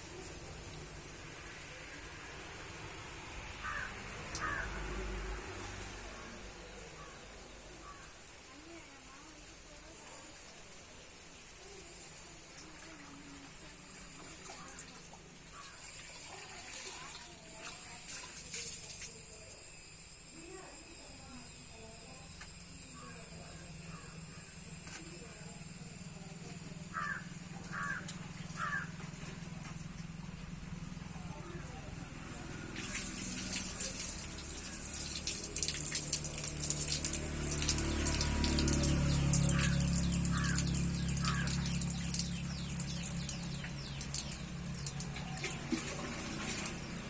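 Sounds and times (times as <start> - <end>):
crow cawing: 3.6 - 4.9, 7.8 - 8.1, 26.9 - 29.0, 39.4 - 41.8
steady low hum: 19.2 - 47.0
small birds chirping: 33.5 - 47.0
mid-pitched bird calls: 37.6 - 47.0.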